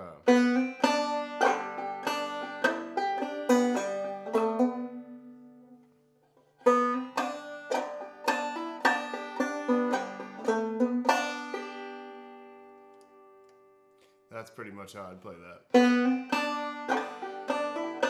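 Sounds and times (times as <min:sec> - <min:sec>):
banjo melody: 0:00.0 - 0:14.1, 0:15.5 - 0:18.0.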